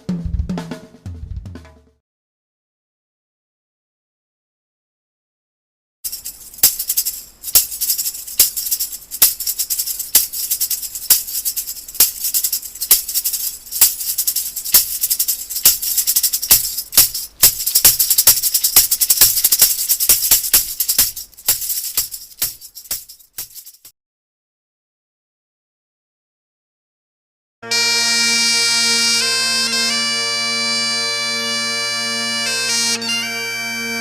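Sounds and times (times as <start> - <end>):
shaker rattling in rhythm: 6.0 - 23.9.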